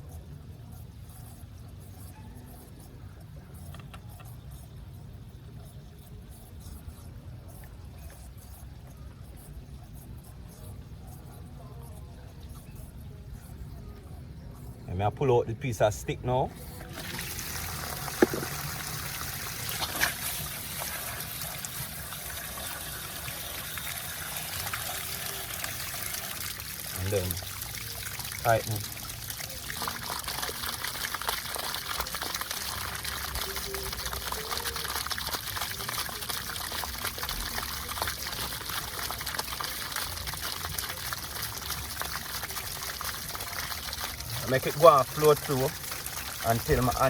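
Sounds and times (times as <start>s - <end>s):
water running from a pipe: 14.9s - 47.0s.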